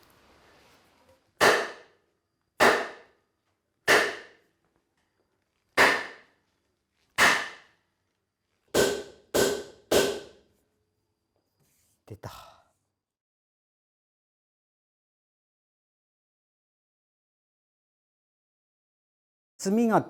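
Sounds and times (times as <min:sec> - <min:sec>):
hammer striking wood: 0:01.4 - 0:01.9, 0:02.6 - 0:03.1, 0:03.9 - 0:04.4, 0:05.8 - 0:06.2, 0:07.2 - 0:07.7, 0:08.7 - 0:10.4.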